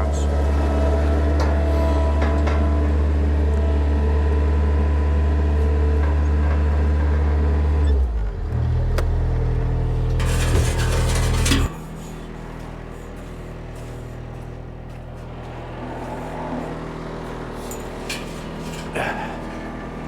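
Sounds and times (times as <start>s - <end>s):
farm machine engine running: 8.4s - 20.0s.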